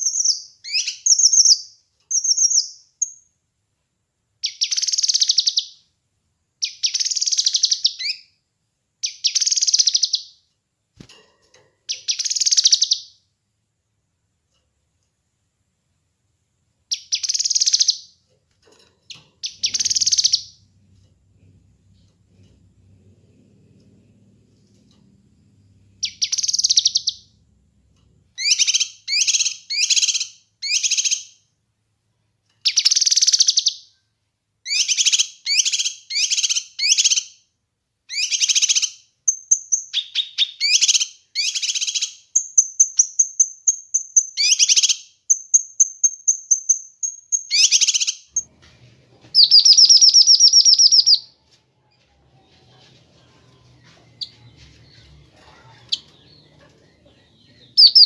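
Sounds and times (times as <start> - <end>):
bird chattering song: 0.0 - 3.2, 4.4 - 5.8, 6.6 - 8.3, 9.0 - 10.3, 11.9 - 13.1, 16.9 - 18.1, 19.4 - 20.6, 26.0 - 27.4, 28.4 - 31.3, 38.1 - 48.5, 49.4 - 51.3, 53.6 - 58.0
fast bird trill: 49.4 - 51.3, 57.7 - 58.0.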